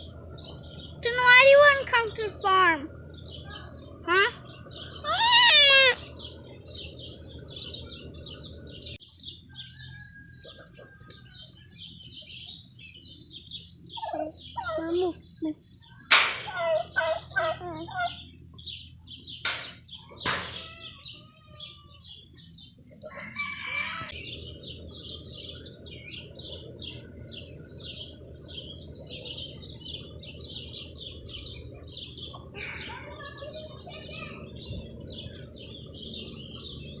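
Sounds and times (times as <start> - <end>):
steady low rumble: 0.0 - 5.1, 6.0 - 9.0, 24.1 - 32.6
birds chirping: 0.0 - 37.0
sharp clacks: 19.4 - 20.6.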